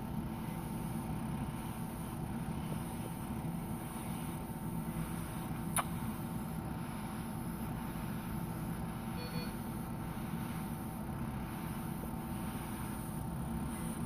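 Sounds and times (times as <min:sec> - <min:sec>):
low mechanical hum and rumble: 0:00.0 - 0:14.0
faint beep: 0:09.1 - 0:09.7.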